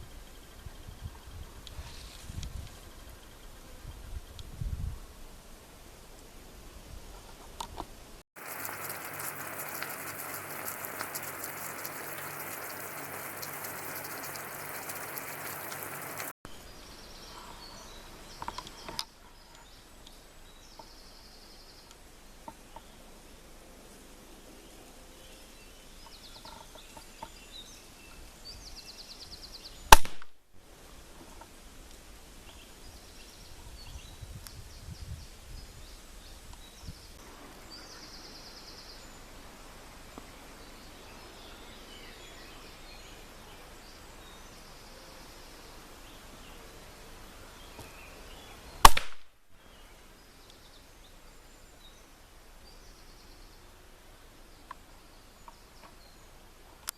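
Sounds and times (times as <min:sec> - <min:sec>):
rifle shots: 0:48.9 - 0:49.3.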